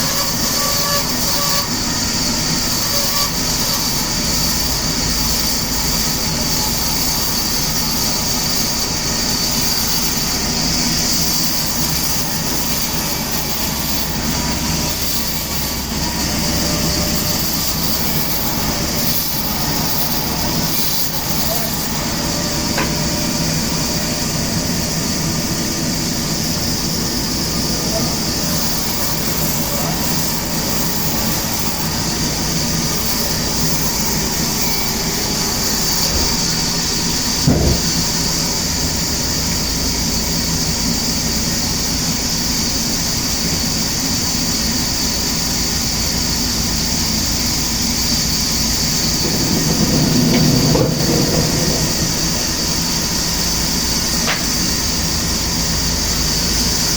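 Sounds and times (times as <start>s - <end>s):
sawmill machinery running: 0.0s - 56.9s
knock: 37.4s - 38.0s.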